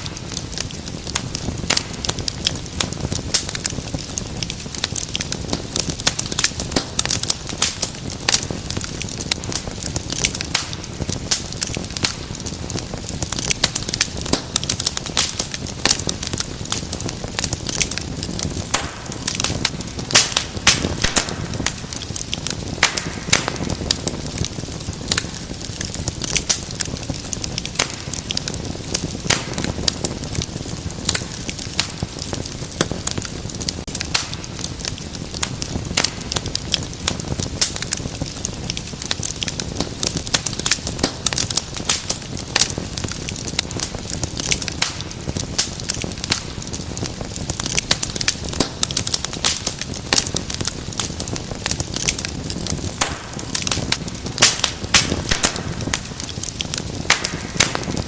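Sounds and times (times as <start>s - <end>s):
fire crackling and popping: 0.0s - 58.0s
low rush of flame: 0.0s - 58.0s.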